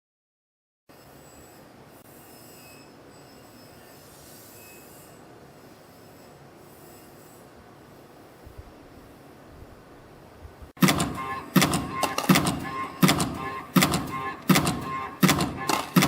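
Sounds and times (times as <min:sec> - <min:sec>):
brief high squeals: 0:00.9 - 0:07.5
spring coiling machine running: 0:10.8 - 0:16.0.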